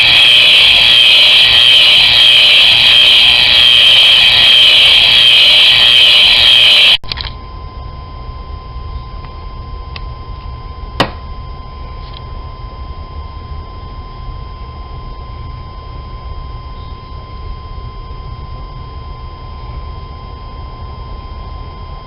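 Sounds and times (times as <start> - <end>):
sharp electric zap: 0.0 - 7.0
low electrical hum: 0.0 - 22.0.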